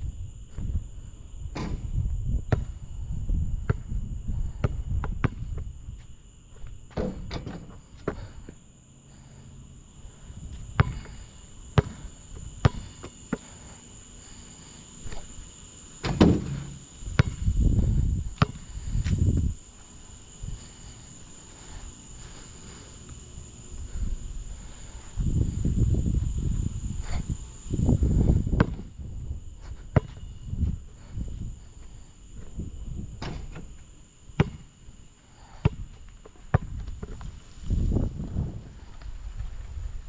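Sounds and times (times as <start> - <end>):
crickets chirring: 0.0 - 40.0
basketball bouncing on hard court: 10.8 - 11.0, 11.8 - 12.0, 17.2 - 17.4, 34.4 - 34.6, 35.6 - 35.8.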